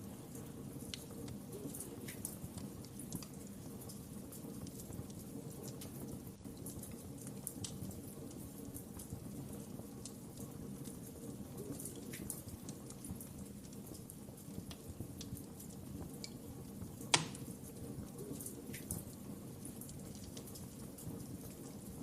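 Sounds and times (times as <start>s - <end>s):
wood fire crackling: 0.0s - 22.0s
loud fire pop: 17.1s - 17.4s.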